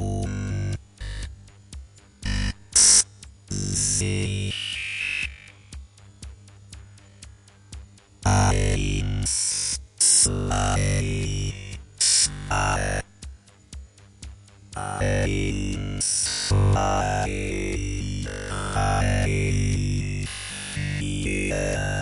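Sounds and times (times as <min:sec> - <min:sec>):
loud electronic synth blocks: 0:00.0 - 0:01.6, 0:02.2 - 0:05.8, 0:08.2 - 0:13.2, 0:14.8 - 0:22.0
even electronic clicking: 0:02.2 - 0:06.1, 0:06.7 - 0:13.1.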